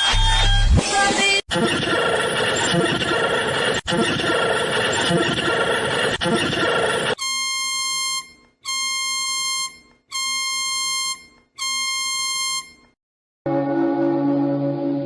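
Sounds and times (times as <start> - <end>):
emergency alert buzzy beeps: 6.3 - 12.9.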